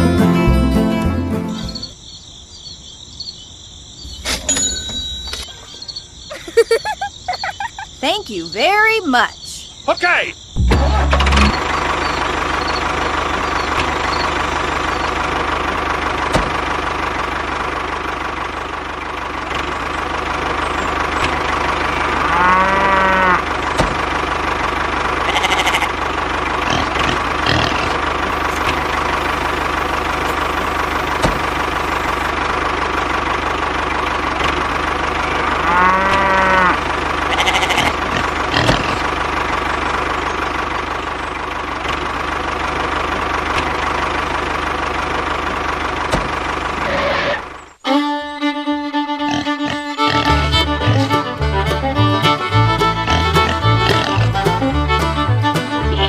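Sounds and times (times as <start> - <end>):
small engine running with whine: 11.0 - 56.0
cow mooing: 22.1 - 23.5, 25.2 - 25.9, 26.7 - 28.5, 35.4 - 39.0, 49.2 - 51.1, 53.1 - 54.3.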